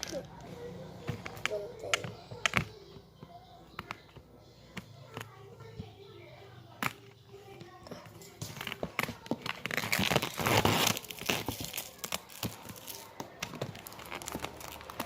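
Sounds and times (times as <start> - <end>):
packaging tearing and crinkling: 8.6 - 15.0.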